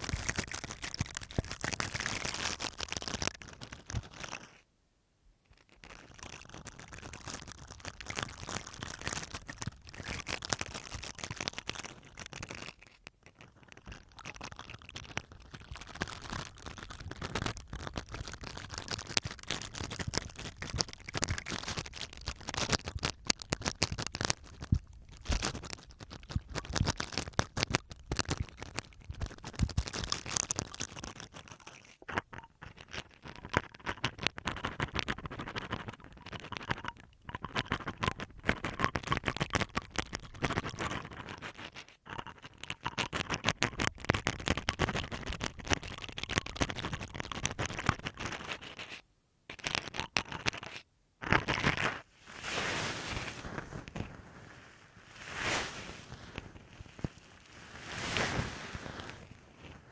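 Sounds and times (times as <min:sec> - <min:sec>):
toothbrush scratching masking tape: 0:47.6 - 0:52.0.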